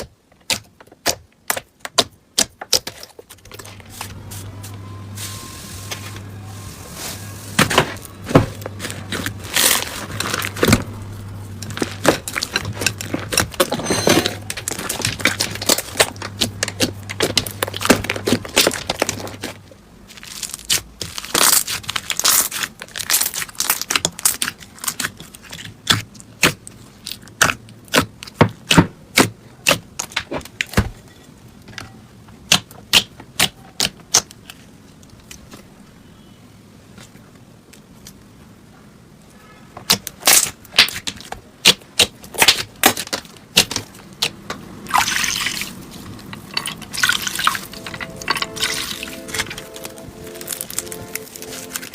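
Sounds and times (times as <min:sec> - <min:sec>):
slime popping and crackling: 0:08.6 - 0:11.0, 0:11.6 - 0:30.7, 0:39.9 - 0:51.9
low hum: 0:45.8 - 0:51.9.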